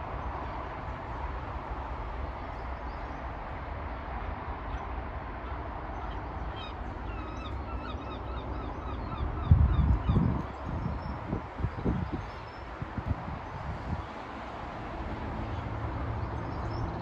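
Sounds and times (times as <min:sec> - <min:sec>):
gulls calling: 0:06.0 - 0:10.3.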